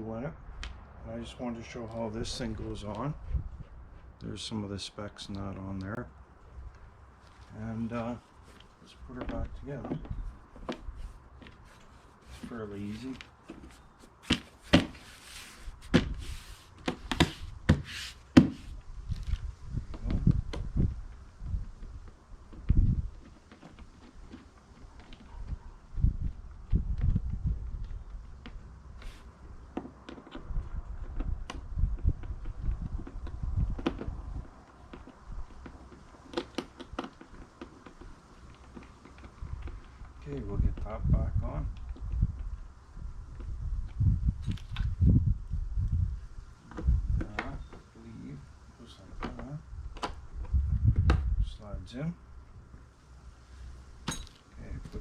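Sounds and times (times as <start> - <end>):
scraping and rubbing: 10.2 - 19.3
cover knocks and clicks: 13.5 - 15.1, 16.8 - 18.7.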